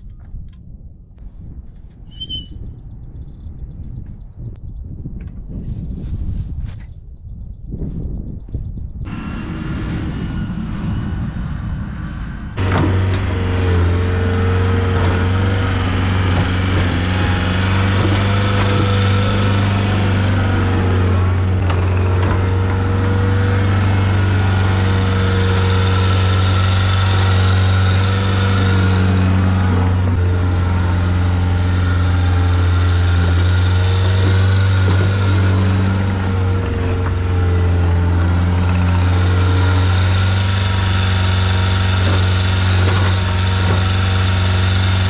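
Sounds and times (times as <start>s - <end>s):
skid steer engine running: 9.1s - 45.0s.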